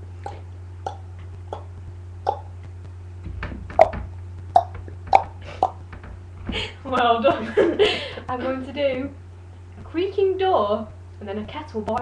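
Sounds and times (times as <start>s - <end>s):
electrical hum: 0.0s - 12.0s
person clopping mouth clicks: 0.2s - 2.6s, 4.5s - 5.8s.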